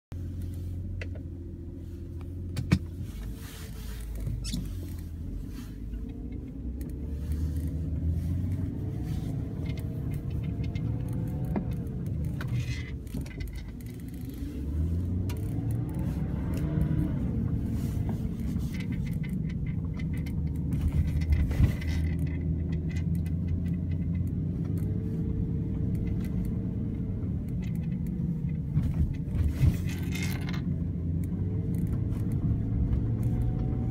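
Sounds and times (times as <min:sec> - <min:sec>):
car engine hum from inside: 0:00.2 - 0:33.9.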